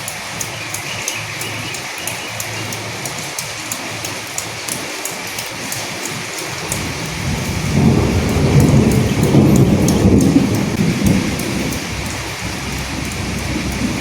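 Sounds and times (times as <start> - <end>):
raindrops pattering: 0.0 - 14.0
steady rainfall: 0.0 - 14.0
low rumble of thunder: 6.6 - 14.0.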